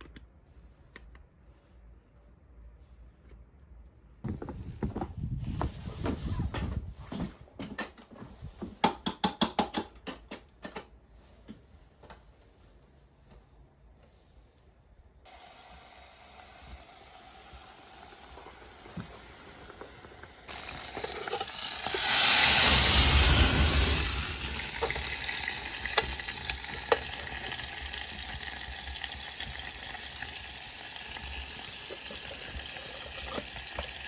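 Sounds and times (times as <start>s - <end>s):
steady hiss: 15.3s - 28.0s.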